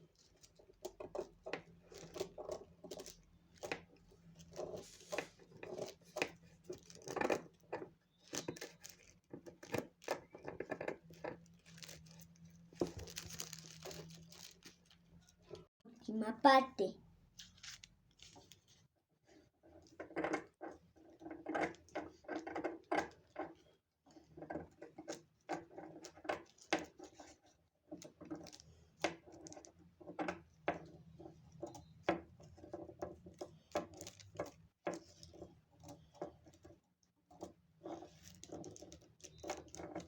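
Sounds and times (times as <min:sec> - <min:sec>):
tissue paper crinkling: 0:11.5 - 0:15.4.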